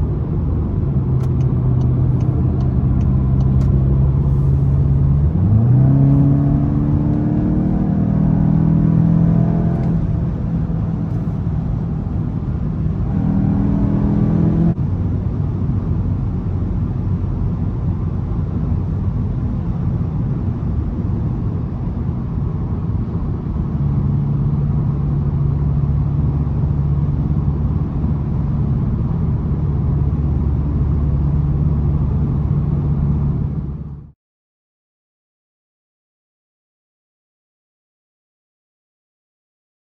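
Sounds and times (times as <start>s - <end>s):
car engine accelerating: 0.0s - 21.4s.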